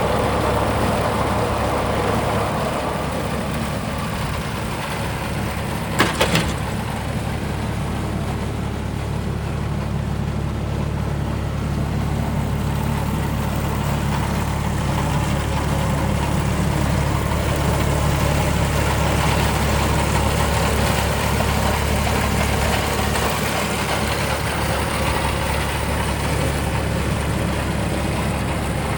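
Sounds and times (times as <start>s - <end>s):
diesel mower engine running: 0.0s - 28.9s.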